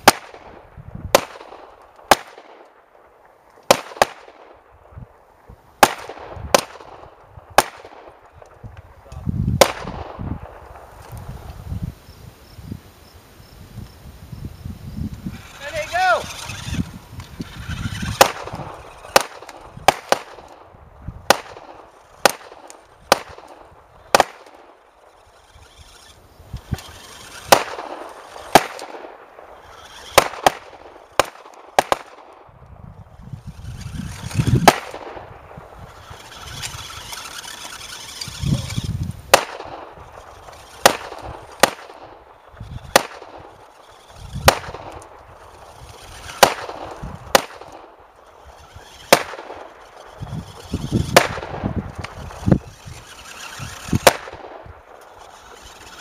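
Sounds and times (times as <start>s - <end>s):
sharp gunshot-like cracks: 0.0s - 2.7s, 3.7s - 4.6s, 5.8s - 8.1s, 9.6s - 10.2s, 18.1s - 20.6s, 21.3s - 23.5s, 24.1s - 24.6s, 27.4s - 29.2s, 30.0s - 32.4s, 34.2s - 35.3s, 39.3s - 42.2s, 42.9s - 43.5s, 44.4s - 45.0s, 46.2s - 47.9s, 48.6s - 49.7s, 51.1s - 52.2s, 54.0s - 54.7s.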